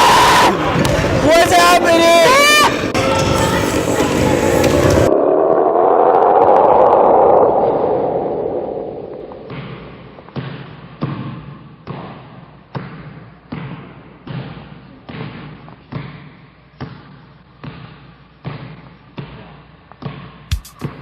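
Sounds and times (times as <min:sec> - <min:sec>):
loud noise: 0:00.0 - 0:10.4
basketball bouncing on hard court: 0:10.4 - 0:21.0.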